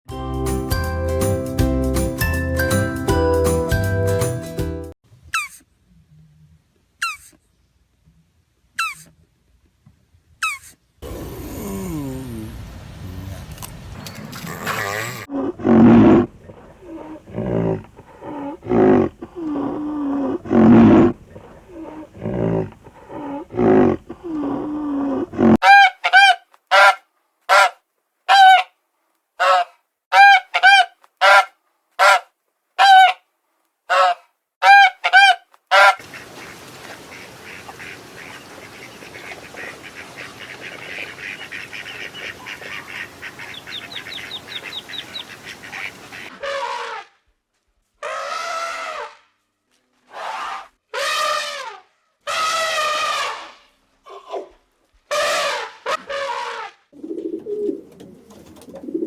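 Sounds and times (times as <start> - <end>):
low animal calls: 14.0 - 25.6
flock of high calls: 33.9 - 47.0
honking calls: 33.9 - 47.0.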